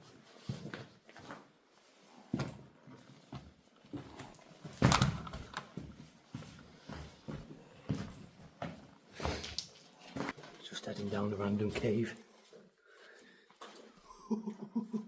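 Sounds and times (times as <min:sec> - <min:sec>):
heavy breathing: 0:12.4 - 0:14.1.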